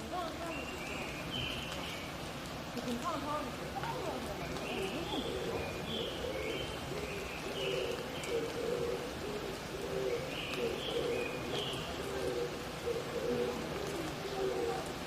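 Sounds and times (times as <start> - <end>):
wet forest background hiss: 0.0 - 15.0
dove cooing: 3.8 - 15.0.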